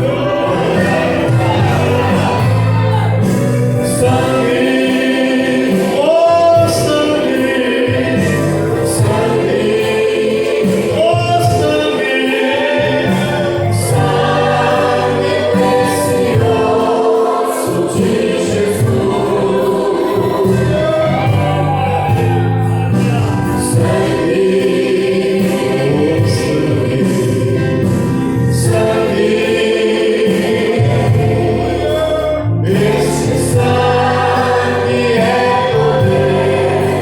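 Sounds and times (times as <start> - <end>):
gospel worship music with choir: 0.0 - 37.0.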